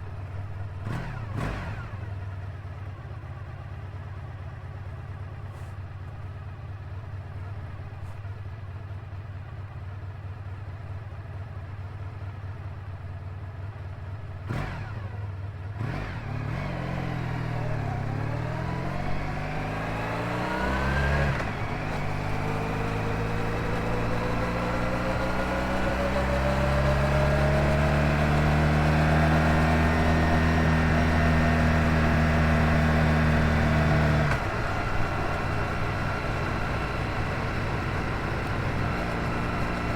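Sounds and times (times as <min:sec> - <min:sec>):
motorcycle engine: 0:12.4 - 0:39.9.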